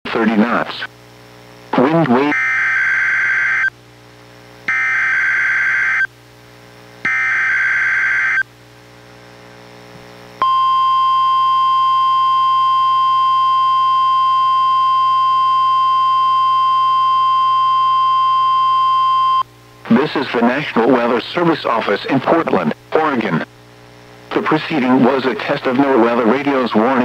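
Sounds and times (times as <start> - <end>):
high-pitched warning alarm tone: 2.2 - 3.7, 7.1 - 8.4.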